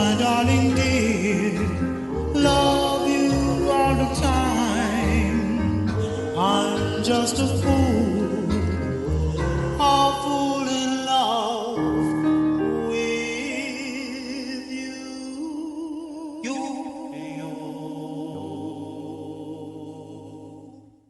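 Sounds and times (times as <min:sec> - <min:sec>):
band backing: 0:00.0 - 0:11.1
vocal group singing in harmony: 0:00.0 - 0:21.0.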